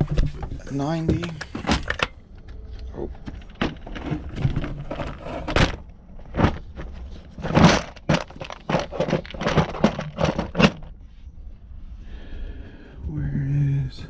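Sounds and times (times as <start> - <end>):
objects knocking and clattering: 0.0 - 11.0
scraping clatter: 0.0 - 11.1
rustling: 0.0 - 12.0.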